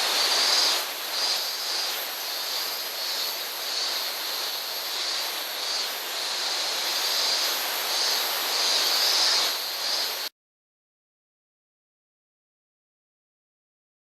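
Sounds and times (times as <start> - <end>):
rushing water of a stream: 0.0 - 10.3.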